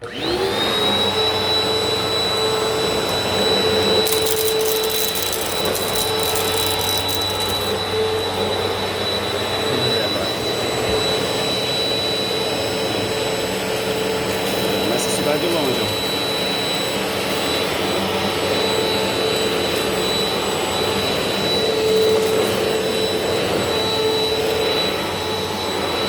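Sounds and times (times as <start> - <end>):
vacuum cleaner running: 0.0 - 26.0
grit crackling in vacuum: 3.1 - 7.8.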